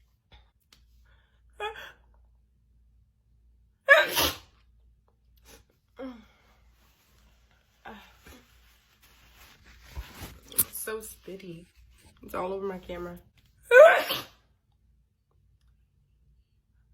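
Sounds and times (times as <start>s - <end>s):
woman sneezing: 3.9s - 4.5s, 13.7s - 14.4s.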